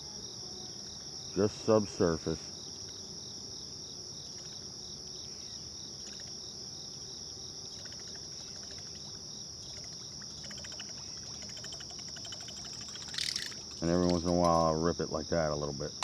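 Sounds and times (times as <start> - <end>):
high-pitched insect trill: 0.0 - 16.0
faint ticking: 7.7 - 14.6.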